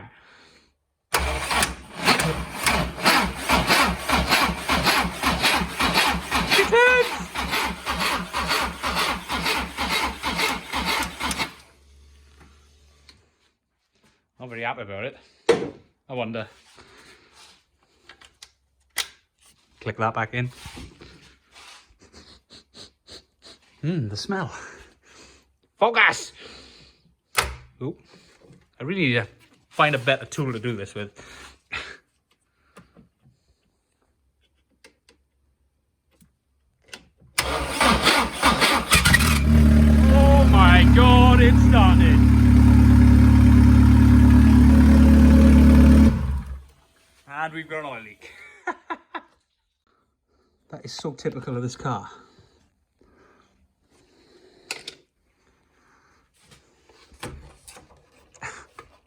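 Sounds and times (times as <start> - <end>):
starter motor cranking engine: 1.1 - 11.8, 37.4 - 46.8.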